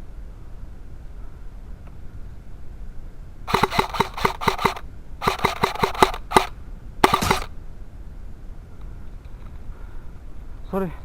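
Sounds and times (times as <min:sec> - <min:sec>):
airsoft gun firing: 0:03.5 - 0:07.5.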